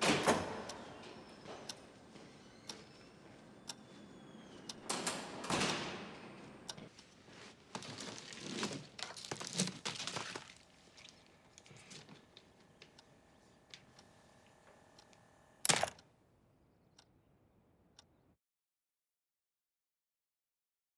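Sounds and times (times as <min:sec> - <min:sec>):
crackling handling noises: 0:06.7 - 0:13.0.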